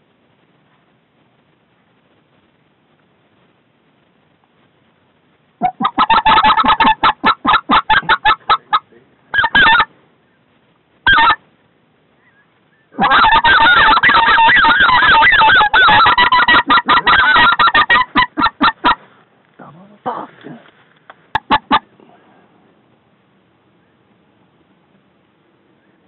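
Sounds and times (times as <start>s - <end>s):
goose call clucking and yodeling: 5.6s - 9.9s, 11.1s - 11.4s, 12.2s - 19.0s, 21.3s - 21.9s.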